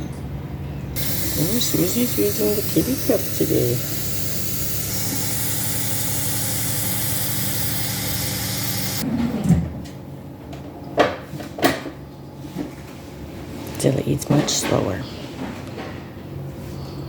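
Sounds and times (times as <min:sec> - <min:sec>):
kitchen appliance hissing: 0:01.0 - 0:09.0.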